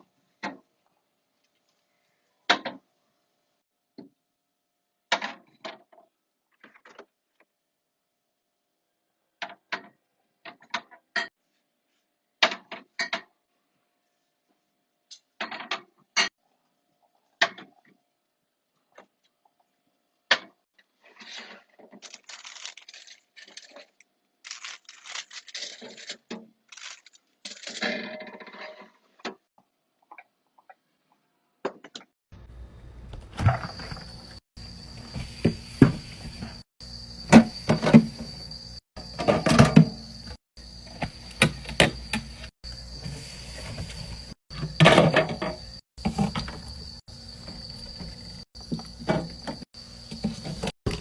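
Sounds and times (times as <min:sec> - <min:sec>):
packaging rustling: 0:22.0 - 0:26.1, 0:26.7 - 0:27.3.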